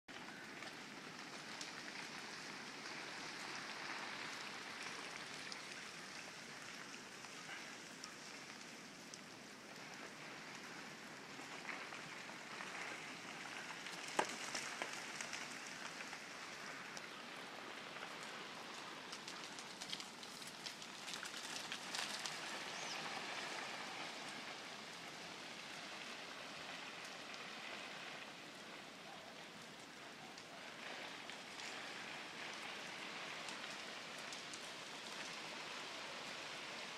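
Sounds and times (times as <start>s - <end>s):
melting snow dropping from trees: 0.1s - 36.9s
small sharp ticks: 18.2s - 23.1s.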